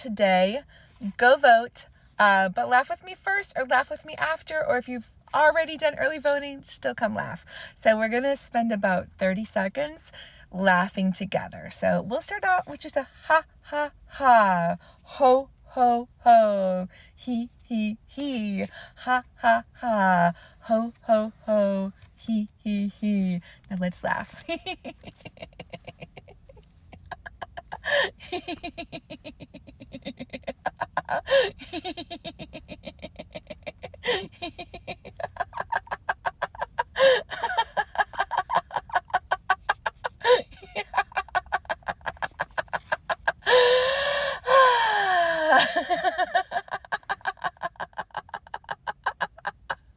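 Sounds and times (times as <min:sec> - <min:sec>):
woman laughing: 0:24.1 - 0:49.9.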